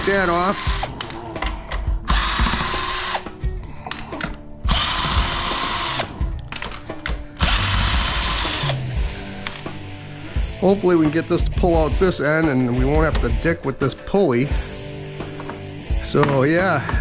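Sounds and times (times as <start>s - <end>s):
power drill bursts: 0.0s - 1.0s, 2.1s - 3.3s, 4.7s - 6.1s, 7.4s - 8.9s.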